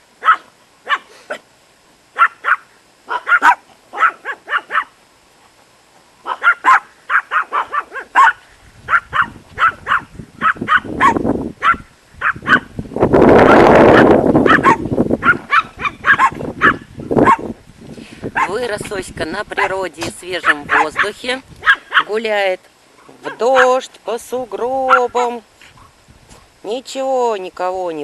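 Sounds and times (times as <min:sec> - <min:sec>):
small dogs yapping: 0:00.2 - 0:01.4, 0:02.2 - 0:05.0, 0:06.2 - 0:12.7, 0:13.4 - 0:17.5, 0:18.3 - 0:18.6, 0:20.4 - 0:22.2, 0:23.0 - 0:23.8.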